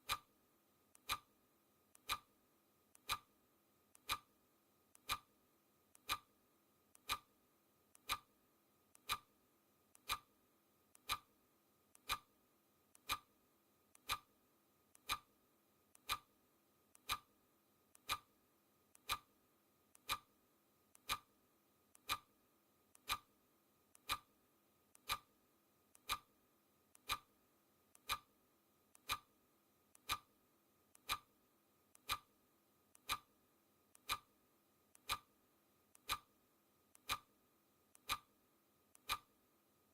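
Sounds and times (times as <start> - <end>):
clock ticking: 0.0 - 0.3, 0.9 - 1.3, 1.9 - 2.3, 2.9 - 3.3, 3.9 - 4.3, 4.9 - 5.3, 5.9 - 6.3, 6.9 - 7.3, 7.9 - 8.3, 8.9 - 9.3, 9.9 - 10.3, 10.9 - 11.3, 11.9 - 12.3, 12.9 - 13.3, 13.9 - 14.3, 15.0 - 15.3, 16.0 - 16.3, 17.0 - 17.3, 17.9 - 18.3, 18.9 - 19.3, 19.9 - 20.3, 20.9 - 21.3, 22.0 - 22.3, 22.9 - 23.3, 23.9 - 24.3, 25.0 - 25.3, 25.9 - 26.3, 26.9 - 27.3, 28.0 - 28.3, 28.9 - 29.3, 30.0 - 30.3, 30.9 - 31.3, 31.9 - 32.3, 33.0 - 33.3, 33.9 - 34.3, 34.9 - 35.3, 35.9 - 37.3, 37.9 - 38.3, 38.9 - 39.4.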